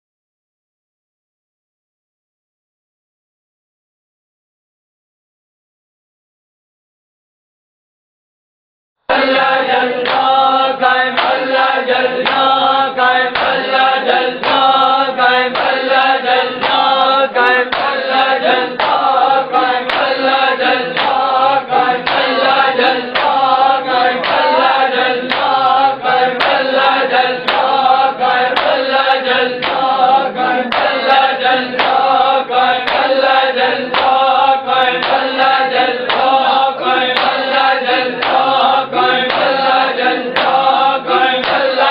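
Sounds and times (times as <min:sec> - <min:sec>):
men chanting in unison: 0:09.1 - 0:41.9.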